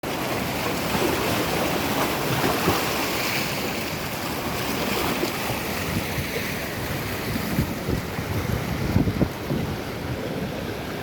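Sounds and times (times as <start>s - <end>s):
sea surf washing on shore: 0.0s - 11.0s
wind buffeting microphone: 4.1s - 11.0s.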